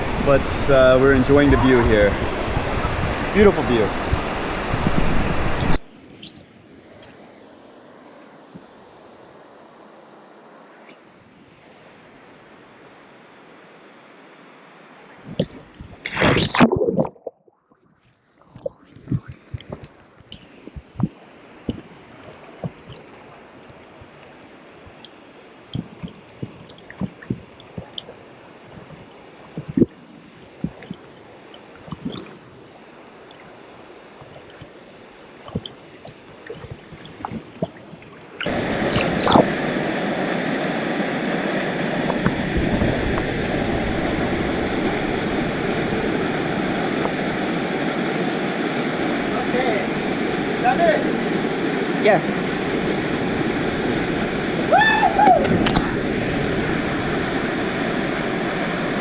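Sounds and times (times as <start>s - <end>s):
waterfall rushing: 0.0s - 5.8s, 38.4s - 59.0s.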